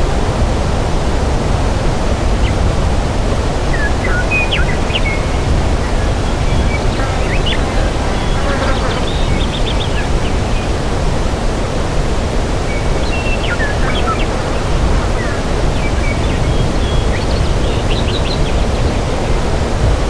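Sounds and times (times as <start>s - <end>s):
steady low rushing noise: 0.0s - 20.0s
small birds chirping: 3.7s - 10.8s.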